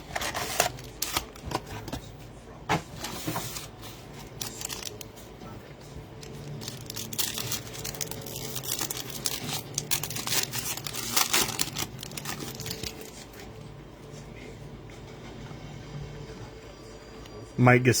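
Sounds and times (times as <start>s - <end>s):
wrapper crinkling and tearing: 0.0s - 1.5s, 3.5s - 5.1s, 6.1s - 13.5s.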